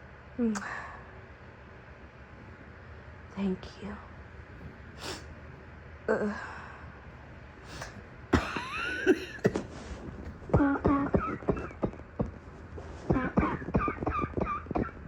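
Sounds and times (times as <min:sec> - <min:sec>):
woman coughing: 0:08.3 - 0:09.6.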